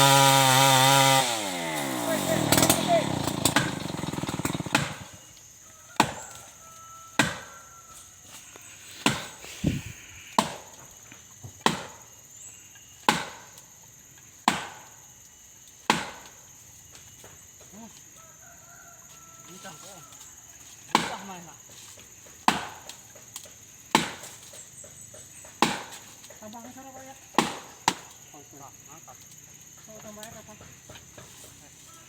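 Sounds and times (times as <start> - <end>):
chainsaw engine: 0.0 - 5.4, 8.4 - 10.6
sharp blows on wood: 7.2 - 7.5, 8.7 - 10.7, 13.0 - 13.5, 14.4 - 14.8.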